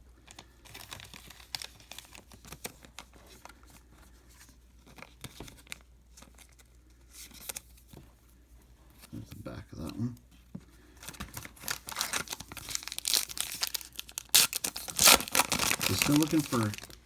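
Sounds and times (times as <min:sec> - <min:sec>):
cards being flipped through: 0:11.1 - 0:17.0.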